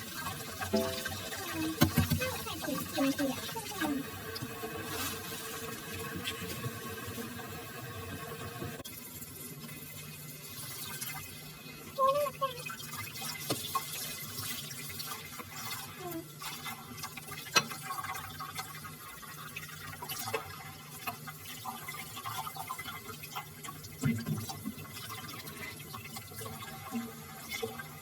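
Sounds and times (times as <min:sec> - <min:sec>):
water running from tap: 0:00.0 - 0:28.0.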